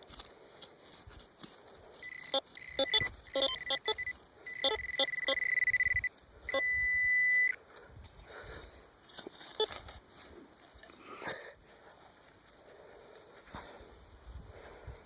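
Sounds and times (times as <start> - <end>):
metal detector beeping: 2.0 - 7.6, 9.4 - 9.8.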